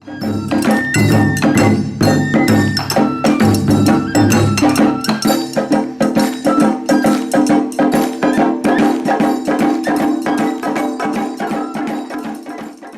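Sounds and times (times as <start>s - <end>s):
taiko drums playing fast rhythm: 0.0s - 12.9s.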